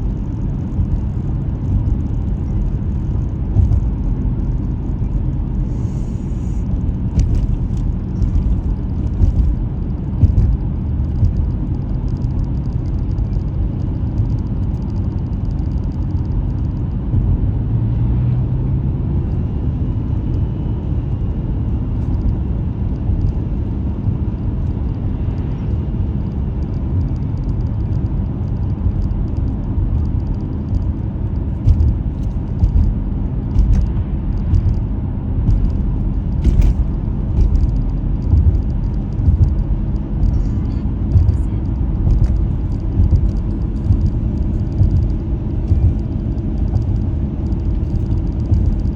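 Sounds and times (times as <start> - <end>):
car engine and tyres rumbling: 0.0 - 48.9
knocks and thumps from bumps: 7.1 - 11.6, 31.6 - 40.4, 41.0 - 48.9.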